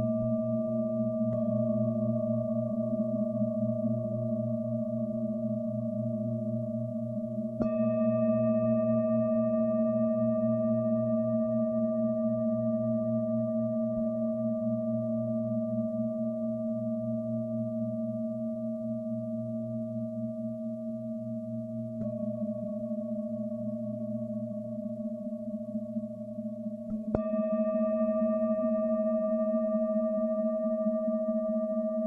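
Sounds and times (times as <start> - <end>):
singing bowls ringing: 26.9 - 32.0.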